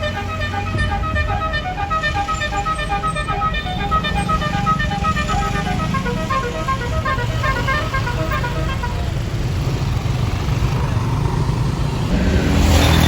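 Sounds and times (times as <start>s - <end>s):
bus horn playing melody: 0.0s - 9.8s
bus engine running: 0.0s - 13.0s.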